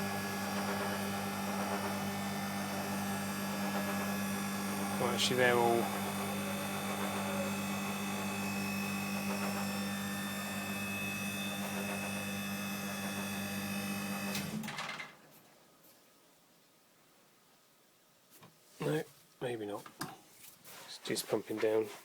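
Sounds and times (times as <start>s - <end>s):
refrigeration compressor humming: 0.0s - 14.6s.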